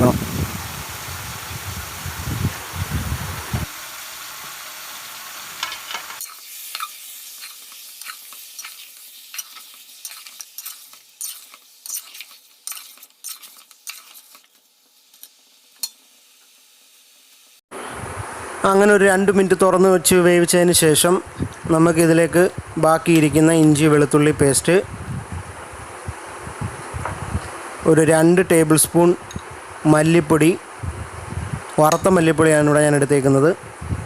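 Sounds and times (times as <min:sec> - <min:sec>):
food sizzling in hot oil: 0:00.0 - 0:17.6
spoon scraping pan: 0:05.6 - 0:16.0.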